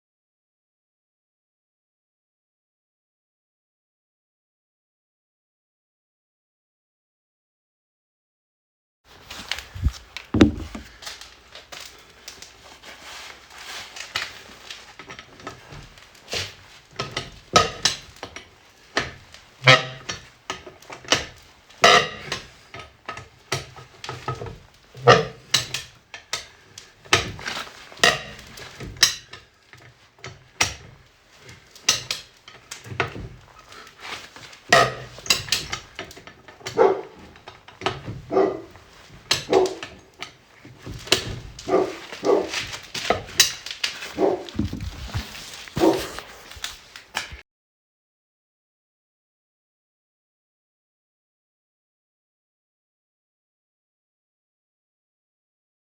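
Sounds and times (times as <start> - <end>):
dog barking: 36.7 - 37.2, 38.3 - 38.7, 39.4 - 39.9, 41.7 - 42.6, 44.1 - 44.7, 45.8 - 46.2.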